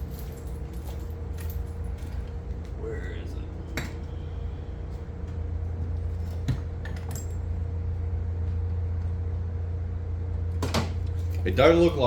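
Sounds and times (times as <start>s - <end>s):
small metal parts clinking: 0.0s - 2.2s
steady low hum: 0.0s - 12.0s.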